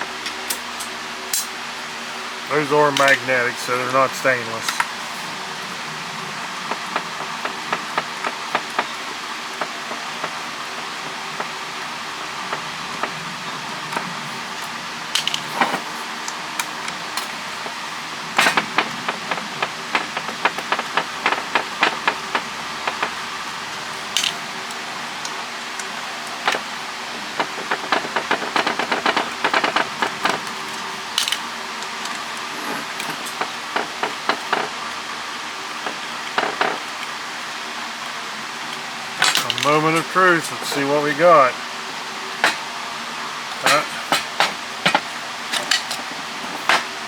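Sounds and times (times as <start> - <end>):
steady low hum: 0.0 - 47.0
hand tools clicking on metal: 2.8 - 5.0, 13.9 - 17.8, 18.4 - 26.6, 27.3 - 31.4, 39.2 - 41.5, 43.5 - 46.9.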